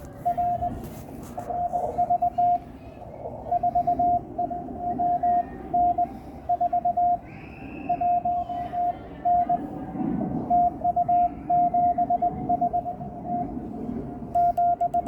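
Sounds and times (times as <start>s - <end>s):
radio band noise: 0.0s - 7.2s
morse code beeps: 0.1s - 2.6s, 3.5s - 7.2s, 7.9s - 9.7s, 10.5s - 12.9s, 14.4s - 15.0s.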